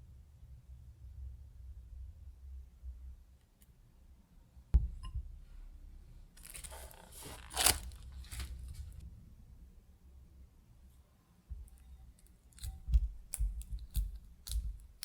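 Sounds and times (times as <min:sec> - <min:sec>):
packaging tearing and crinkling: 0:06.4 - 0:09.0.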